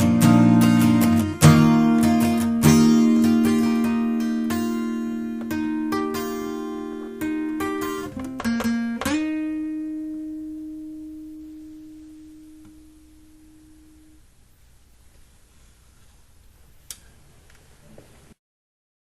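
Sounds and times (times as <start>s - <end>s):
plucked guitar notes: 0.0s - 14.2s.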